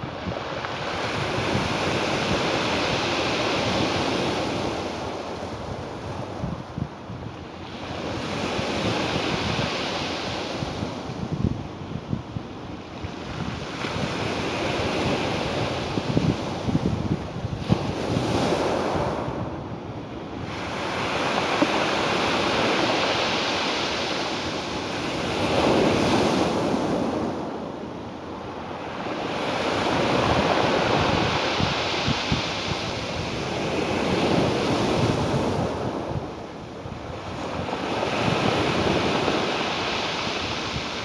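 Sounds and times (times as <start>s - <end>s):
ocean surf breaking: 20.4s - 41.0s.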